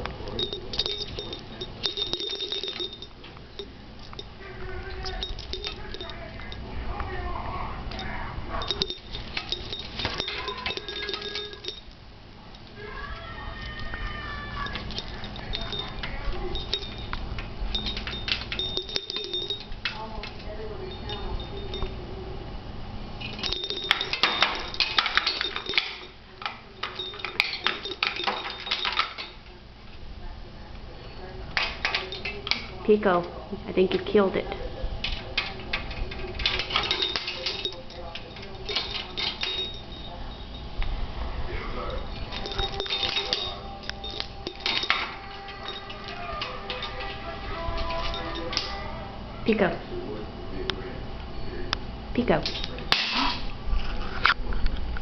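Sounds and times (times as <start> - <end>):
thin high ringing: 0.0 - 30.3, 30.9 - 54.7
metal toy clinking and jingling: 0.2 - 6.8, 7.9 - 12.0, 14.0 - 22.2, 23.2 - 29.6, 31.6 - 33.2, 35.0 - 49.7, 52.2 - 53.5.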